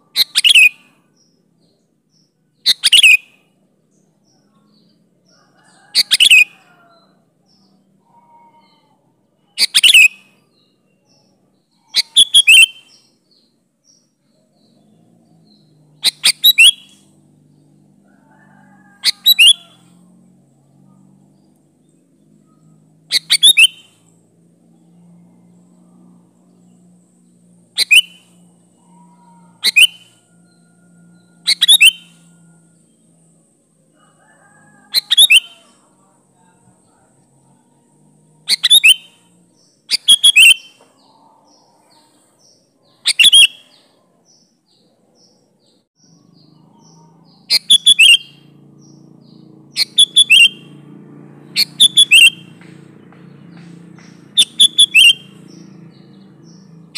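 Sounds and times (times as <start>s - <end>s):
bulbul calling: 0.0s - 0.9s, 2.6s - 3.4s, 11.8s - 13.1s, 14.6s - 17.2s, 18.8s - 19.8s, 22.4s - 24.1s, 27.6s - 30.2s, 31.4s - 32.3s, 34.9s - 35.8s, 38.4s - 41.6s, 43.0s - 43.8s, 46.1s - 50.8s, 51.4s - 56.9s.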